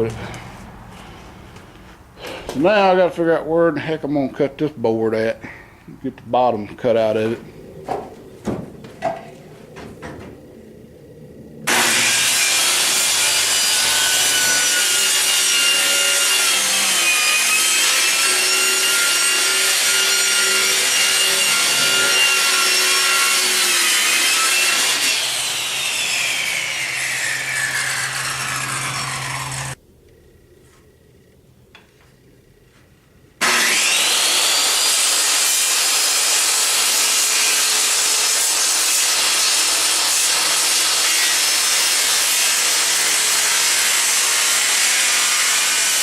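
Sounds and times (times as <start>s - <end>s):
power saw cutting wood: 11.6s - 29.8s, 33.4s - 46.0s.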